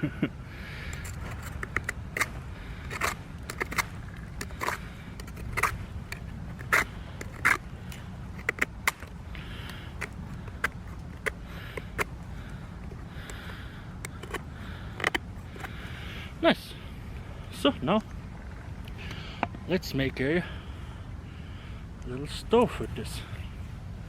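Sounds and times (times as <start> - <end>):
knife scraping wooden stick: 0.9 - 12.1, 14.0 - 14.4.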